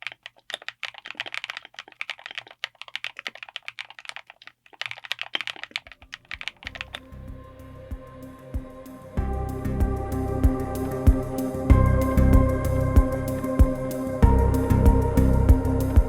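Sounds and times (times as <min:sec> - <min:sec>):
mechanical keyboard typing: 0:00.0 - 0:07.0
soft background music: 0:05.8 - 0:16.0.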